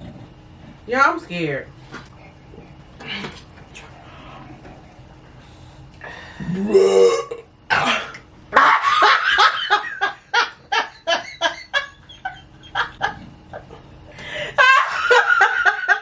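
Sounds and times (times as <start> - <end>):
hearty laughter: 8.6 - 16.0.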